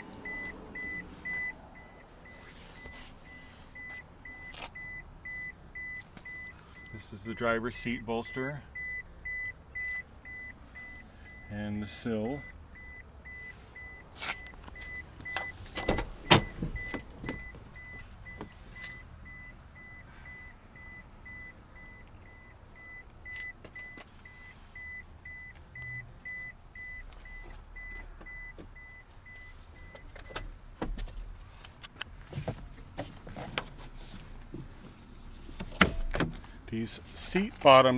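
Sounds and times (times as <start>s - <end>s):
car warning chime beeping: 0.0s - 30.7s
knocks and handling thumps: 14.3s - 19.0s.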